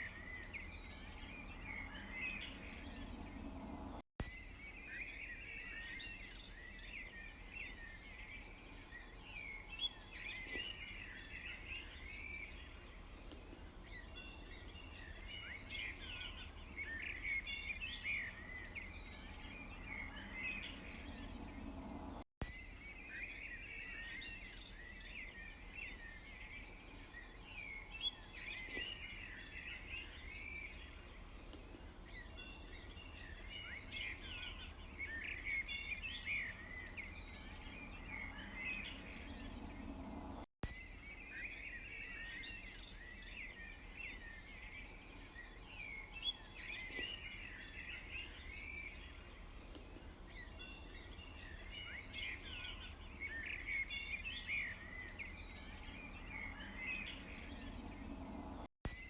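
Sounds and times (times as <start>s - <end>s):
small birds chirping: 0.0s - 59.0s
faint low hum: 30.8s - 40.4s.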